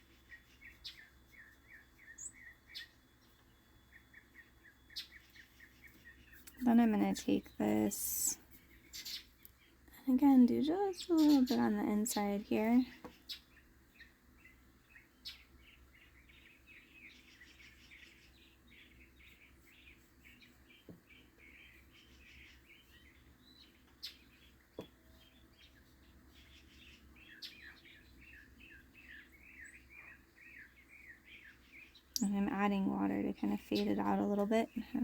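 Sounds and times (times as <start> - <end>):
small birds chirping: 0.0 - 35.0.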